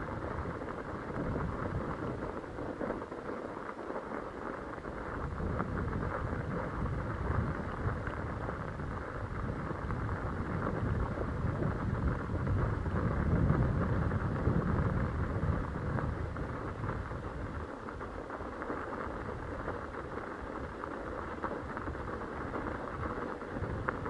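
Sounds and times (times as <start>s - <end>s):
tyre noise on trail: 0.0s - 24.0s
wind rumbling over microphone: 0.0s - 24.0s.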